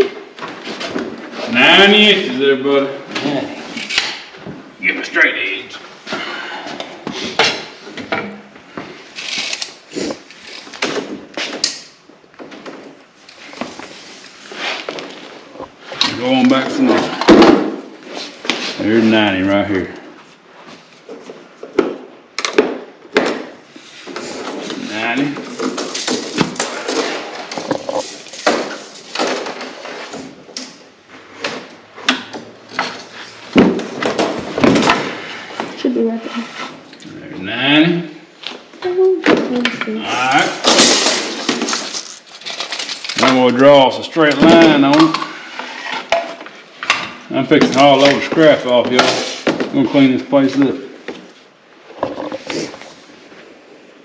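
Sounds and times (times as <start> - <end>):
sheet stock scraping and rustling: 13.2 - 17.4.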